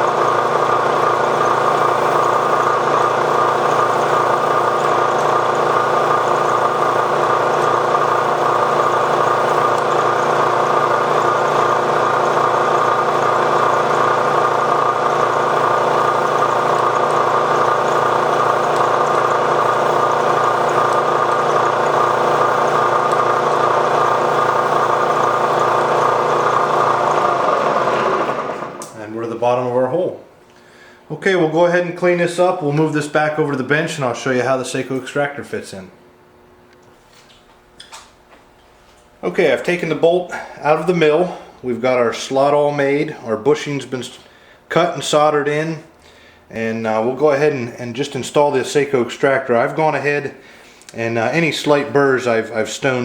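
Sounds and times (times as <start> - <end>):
milling machine spindle running: 0.0 - 29.7.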